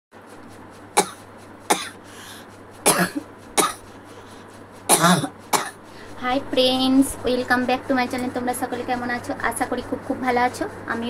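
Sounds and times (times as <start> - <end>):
person coughing: 1.0 - 2.0, 2.9 - 3.8, 4.9 - 5.8.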